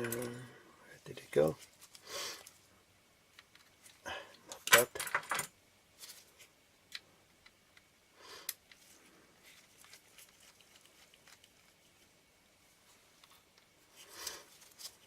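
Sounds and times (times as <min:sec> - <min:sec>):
soft rustle: 0:01.0 - 0:02.7, 0:05.9 - 0:06.6, 0:08.7 - 0:15.0.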